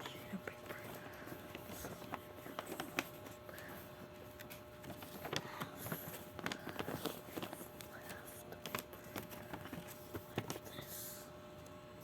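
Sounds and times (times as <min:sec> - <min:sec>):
paper crinkling: 0:00.0 - 0:11.1.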